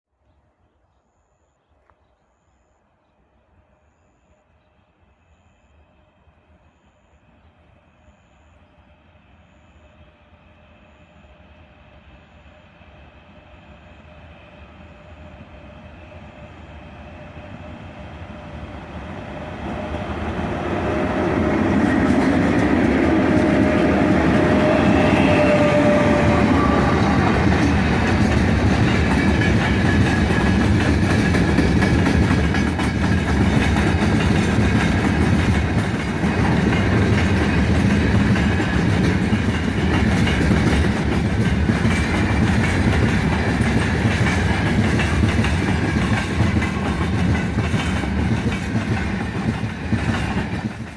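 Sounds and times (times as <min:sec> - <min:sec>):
freight train passing: 0:02.9 - 0:50.9
wheels rumbling on rails: 0:11.0 - 0:50.9.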